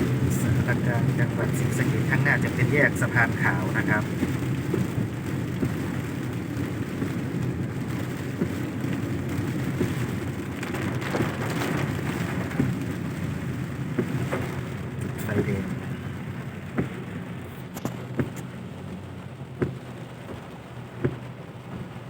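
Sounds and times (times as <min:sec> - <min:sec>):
rain spattering: 0:00.0 - 0:22.0
sharp rain drop ticks: 0:00.0 - 0:22.0
vehicle engine and tyres hum: 0:00.0 - 0:22.0.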